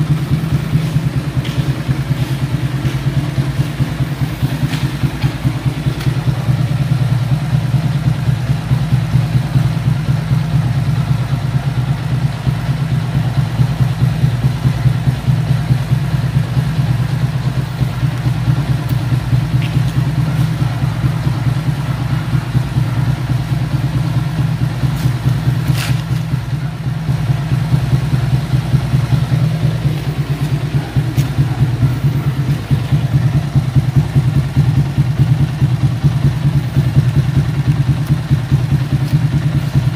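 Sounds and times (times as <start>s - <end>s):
motorcycle engine idling: 0.0s - 39.9s.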